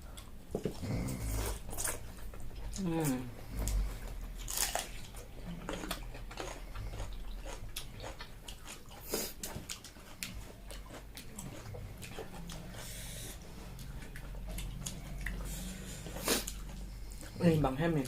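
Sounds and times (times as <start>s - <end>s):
low steady hum: 0.0s - 18.0s
person chewing food: 0.0s - 18.0s.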